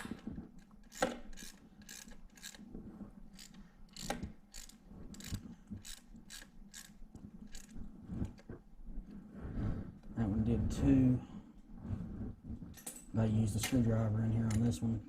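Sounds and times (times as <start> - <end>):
ratcheting hand tool clicking: 0.0 - 2.7, 3.3 - 7.8.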